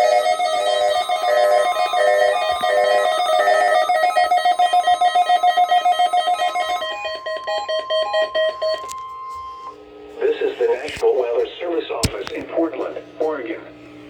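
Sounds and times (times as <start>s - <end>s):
steady warning alarm tone: 0.0s - 9.8s.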